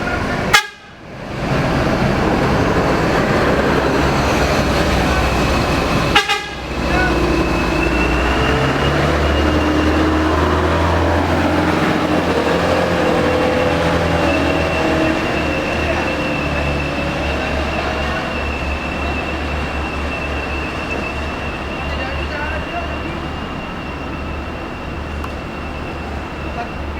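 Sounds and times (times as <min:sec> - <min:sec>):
diesel bus engine rumbling: 0:00.0 - 0:26.9.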